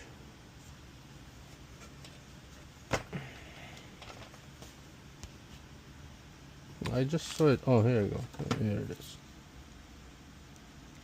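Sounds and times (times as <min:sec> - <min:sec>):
low room hum: 0:00.0 - 0:11.0.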